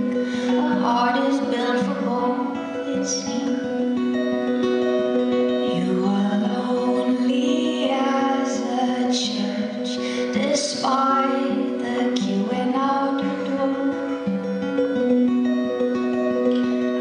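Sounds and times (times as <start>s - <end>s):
woman singing slow song: 0.0s - 4.4s, 5.5s - 14.5s
acoustic instrumental accompaniment: 0.0s - 17.0s.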